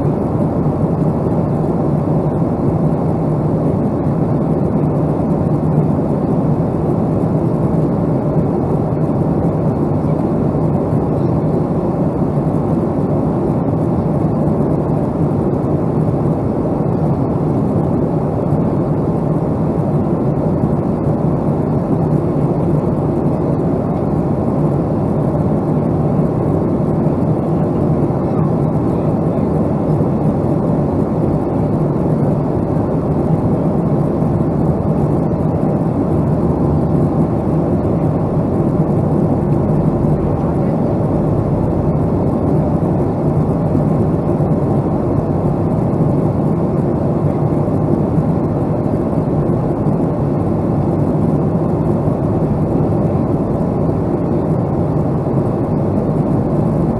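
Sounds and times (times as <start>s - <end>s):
jet engines roaring: 0.0s - 56.9s
low hum: 0.0s - 56.9s.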